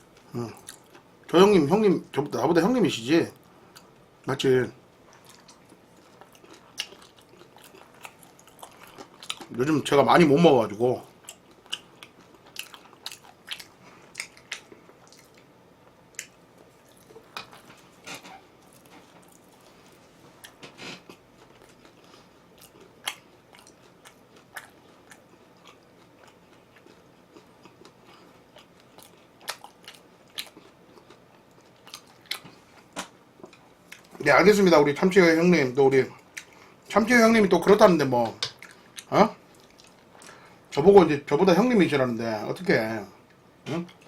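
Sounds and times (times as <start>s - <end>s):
person chewing food: 0.0s - 1.1s, 5.0s - 9.6s, 11.1s - 34.2s, 36.2s - 36.8s, 38.2s - 40.4s.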